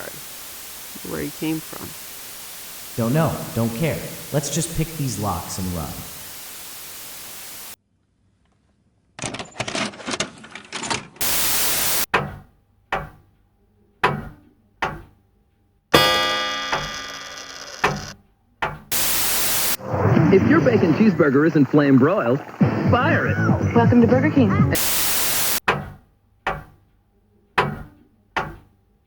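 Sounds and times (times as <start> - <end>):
hiss: 0.0 - 7.8, 11.2 - 12.1, 18.9 - 21.6, 24.8 - 25.6
static bursts: 0.0 - 7.8, 11.2 - 12.1, 18.9 - 25.6
ringing hit: 15.9 - 18.1.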